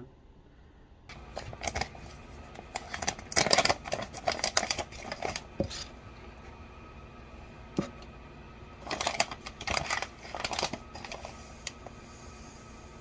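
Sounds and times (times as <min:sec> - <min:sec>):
containers clicking and rattling: 0:01.1 - 0:05.9, 0:08.8 - 0:11.8.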